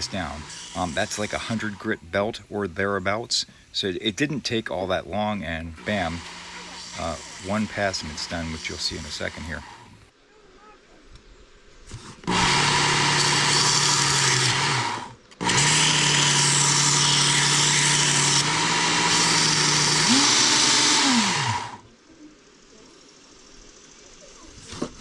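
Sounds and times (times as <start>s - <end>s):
belt grinder grinding steel: 0.0s - 2.2s, 5.6s - 10.1s, 12.2s - 21.8s.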